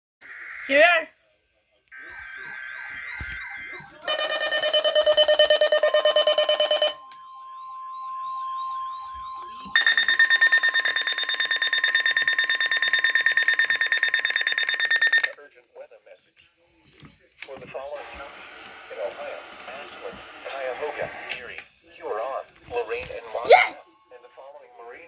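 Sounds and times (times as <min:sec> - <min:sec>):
pulsing buzzy alarm: 0:02.0 - 0:15.4
steady warning tone: 0:02.0 - 0:15.4.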